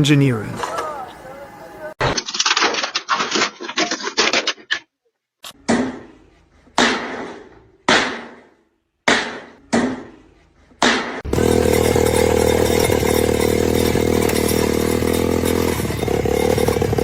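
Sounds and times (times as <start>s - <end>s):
loud steady engine: 11.3s - 17.0s
sharp ringing blows: 11.3s - 17.0s.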